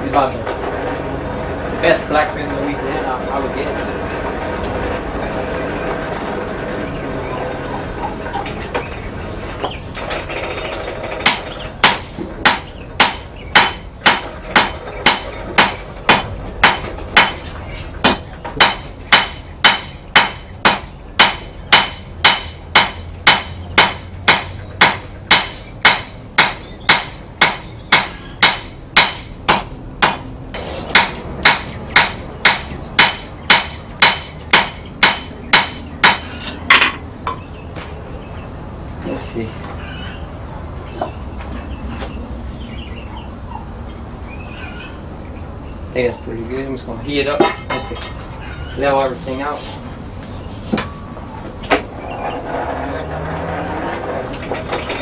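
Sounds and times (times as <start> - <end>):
hammer striking steel on anvil: 18.1 - 37.4.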